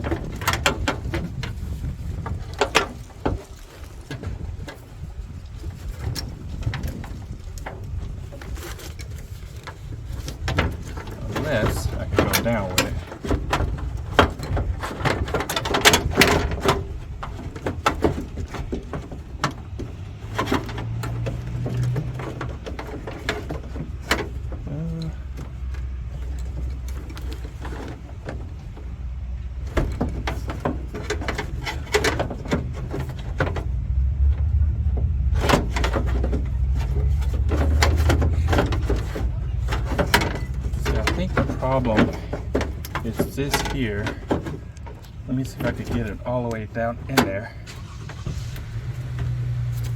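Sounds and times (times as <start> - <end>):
door lock clicks and rattles: 10.3 - 24.6.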